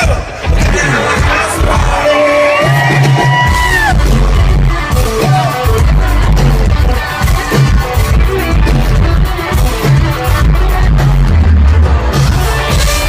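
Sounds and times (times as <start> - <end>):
live country-pop band: 0.0 - 13.0.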